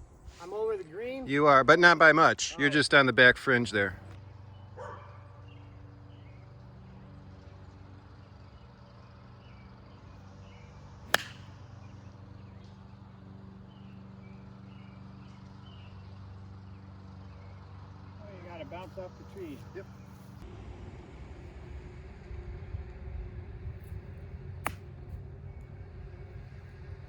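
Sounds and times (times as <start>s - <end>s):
steady low hum: 0.0s - 27.0s
golf club striking ball: 11.1s - 11.7s, 24.6s - 25.0s.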